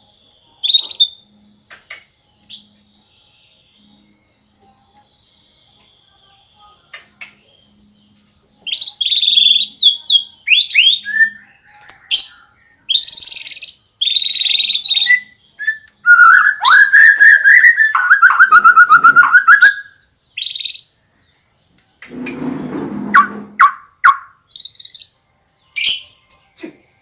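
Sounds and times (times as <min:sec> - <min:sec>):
songbird whistling and trilling: 0:00.6 - 0:02.9, 0:08.6 - 0:21.0, 0:23.0 - 0:26.6.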